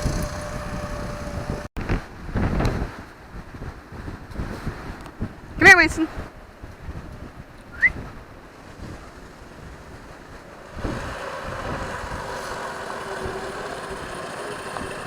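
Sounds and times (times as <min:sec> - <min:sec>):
brief rising whistle: 0:00.0 - 0:01.7, 0:07.7 - 0:08.0
distant mini bike engine running: 0:00.0 - 0:01.7, 0:09.0 - 0:15.0.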